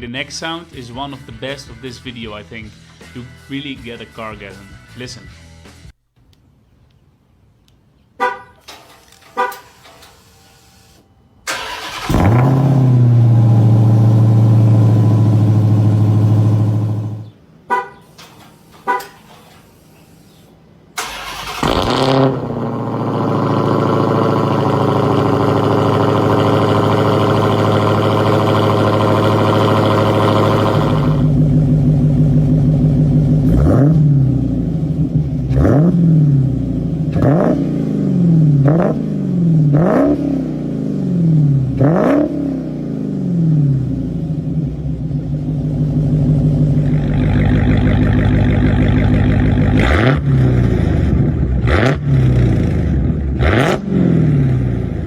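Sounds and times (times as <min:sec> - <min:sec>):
car horn chirps: 0:08.2 - 0:09.9, 0:17.6 - 0:18.2, 0:18.8 - 0:19.3
car engine starting and idling: 0:08.6 - 0:55.0
engine revving: 0:11.5 - 0:17.3, 0:21.0 - 0:44.6, 0:45.2 - 0:55.0.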